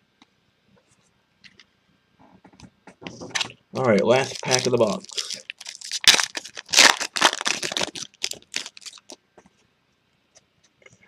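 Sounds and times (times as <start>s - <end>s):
foil wrapper tearing and crinkling: 3.8s - 9.2s.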